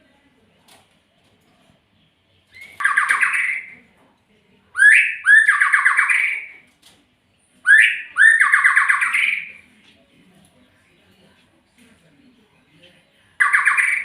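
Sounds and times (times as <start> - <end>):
songbird harsh rattling calls: 2.5 - 3.8, 4.8 - 6.6, 7.7 - 9.6, 13.4 - 14.0.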